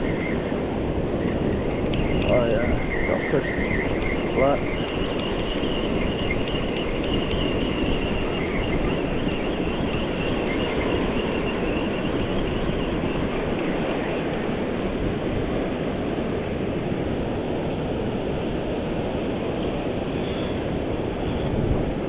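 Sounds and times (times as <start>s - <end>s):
ocean surf rushing: 9.0s - 21.8s.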